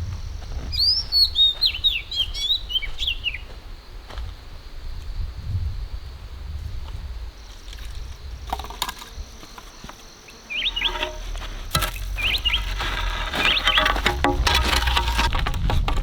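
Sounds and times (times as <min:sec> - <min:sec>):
bird chirping: 0:10.3 - 0:11.4.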